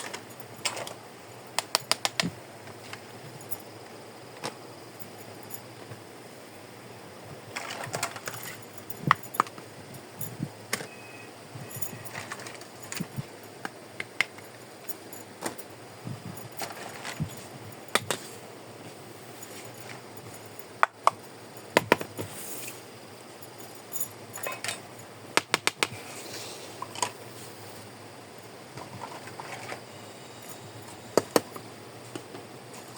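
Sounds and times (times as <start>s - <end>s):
small plastic toys clicking: 1.6s - 2.3s.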